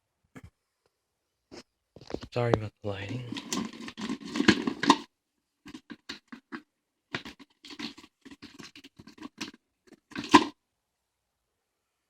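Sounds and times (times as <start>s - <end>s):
plastic packaging rustling: 3.1s - 5.1s, 5.7s - 10.5s.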